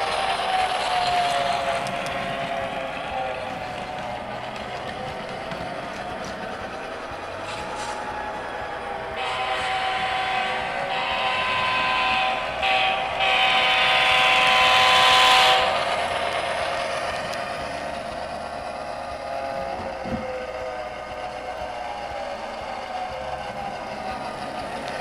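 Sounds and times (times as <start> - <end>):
diesel engine running: 0.0 - 25.0
locomotive horn blasts: 9.1 - 16.3.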